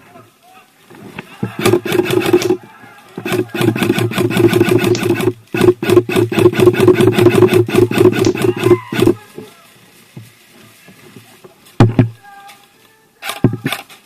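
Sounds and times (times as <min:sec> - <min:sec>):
airsoft gun firing bursts: 0:01.5 - 0:02.6, 0:03.2 - 0:09.2.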